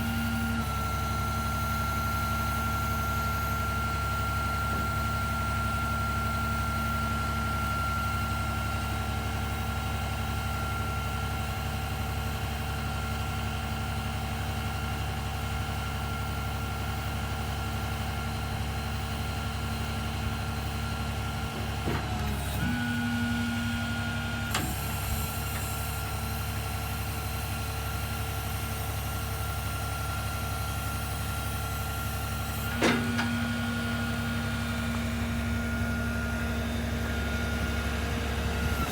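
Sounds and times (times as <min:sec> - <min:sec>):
machinery whining and humming: 0:29.4 - 0:38.9.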